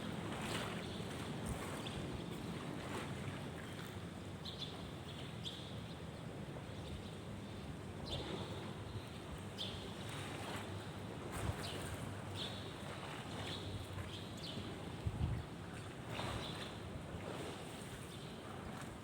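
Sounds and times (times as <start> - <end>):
wind on microphone: 15.0 - 15.6.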